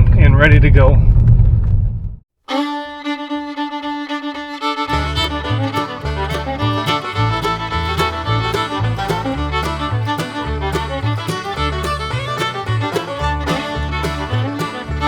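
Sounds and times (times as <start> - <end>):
upbeat fiddle tune: 2.5 - 15.0
steady bass beat: 4.9 - 15.0.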